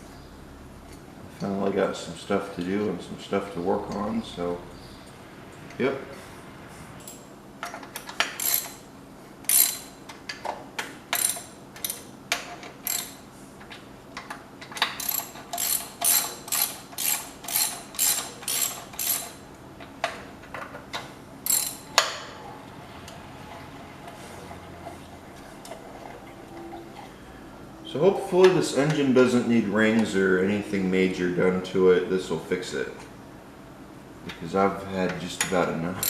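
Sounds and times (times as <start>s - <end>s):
ratchet wrench clicking: 8.0s - 8.8s, 9.4s - 10.0s, 11.1s - 13.2s, 14.8s - 19.4s, 21.4s - 22.1s.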